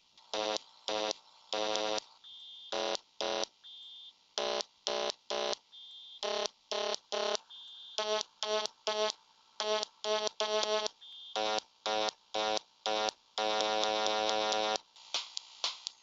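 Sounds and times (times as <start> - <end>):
buzzy square-wave blips: 8.0 - 14.8.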